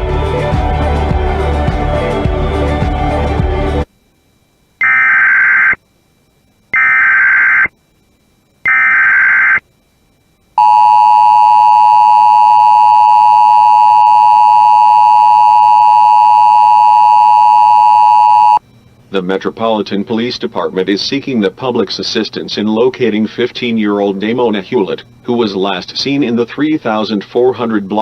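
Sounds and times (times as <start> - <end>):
background music: 0.0 - 3.9
data tone bursts: 4.8 - 7.8, 8.4 - 18.6
two-tone attention signal: 10.6 - 18.6.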